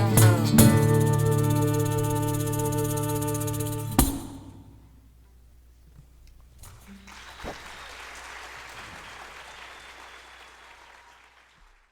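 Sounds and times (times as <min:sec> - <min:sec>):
audience applauding: 0:06.8 - 0:11.9.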